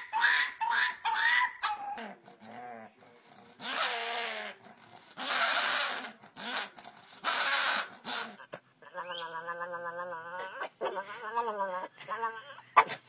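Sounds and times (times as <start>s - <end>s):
dog yipping: 0.0s - 2.0s
dog wavering calls: 0.0s - 2.2s, 5.2s - 12.5s.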